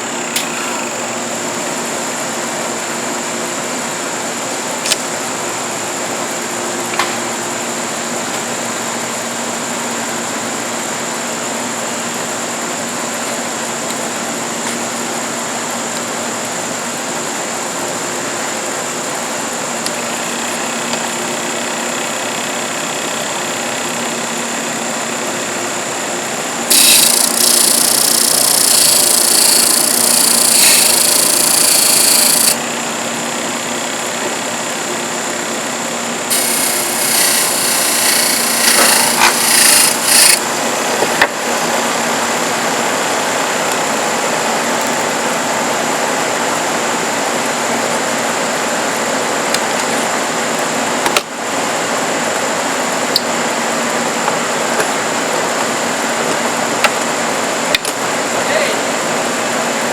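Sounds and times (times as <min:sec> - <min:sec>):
disc sander whining: 0:19.8 - 0:45.1
wood scraping on sanding disc: 0:26.7 - 0:32.6, 0:36.3 - 0:40.5.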